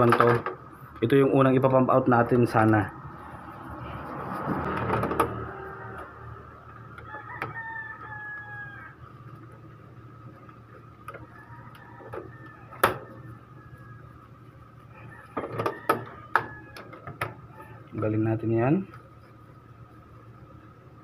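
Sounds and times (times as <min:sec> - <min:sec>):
rooster crowing: 0:03.3 - 0:09.4, 0:11.1 - 0:17.9.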